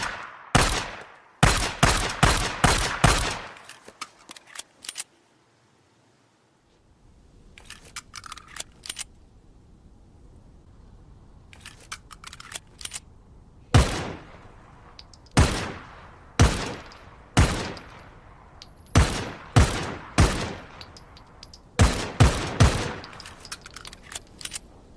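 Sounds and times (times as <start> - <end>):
pistol shots with echo: 0.0 - 3.6, 15.4 - 18.0, 19.0 - 20.7, 21.8 - 23.1
light clicks: 23.0 - 24.7.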